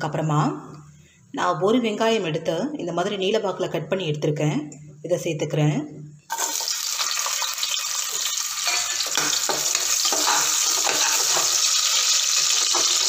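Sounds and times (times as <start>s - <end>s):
onion sizzling in hot oil: 6.3s - 13.0s
spoon scraping a pan: 8.1s - 13.0s.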